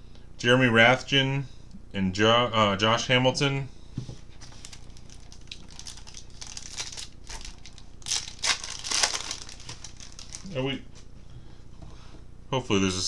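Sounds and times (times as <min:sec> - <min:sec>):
wrapper crinkling and tearing: 0:04.4 - 0:10.6.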